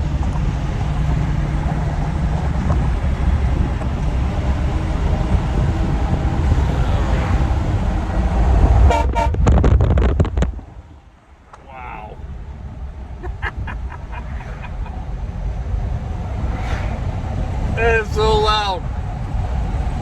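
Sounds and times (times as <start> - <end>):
air train horn blowing: 8.9 - 9.4.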